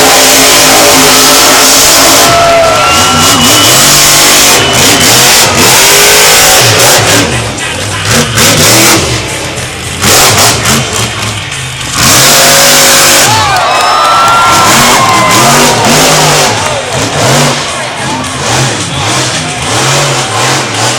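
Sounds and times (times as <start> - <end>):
truck engine revving hard: 0.0 - 20.9.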